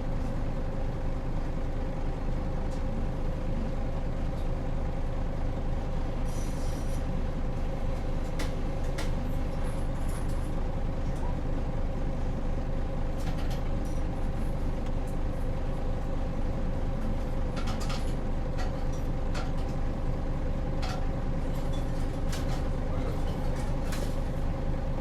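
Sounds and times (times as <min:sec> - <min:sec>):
bus diesel engine running: 0:00.0 - 0:25.0
road rumble: 0:00.0 - 0:25.0
bus body clicks and rattles: 0:07.0 - 0:11.5, 0:12.9 - 0:15.9, 0:16.8 - 0:24.6.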